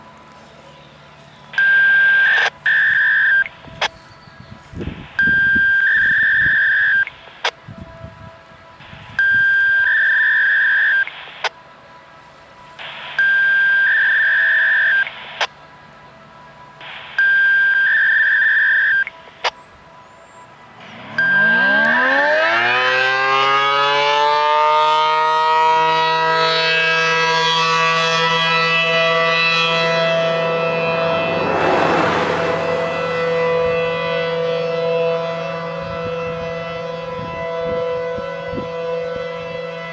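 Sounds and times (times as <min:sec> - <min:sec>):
electronic beep tones: 0:01.6 - 0:04.0, 0:04.9 - 0:07.2, 0:09.2 - 0:11.2, 0:12.9 - 0:15.2, 0:17.2 - 0:19.2, 0:20.9 - 0:21.8
siren winding up and wailing: 0:04.8 - 0:07.5, 0:09.1 - 0:11.5, 0:12.8 - 0:15.5, 0:16.8 - 0:19.6, 0:20.8 - 0:36.4.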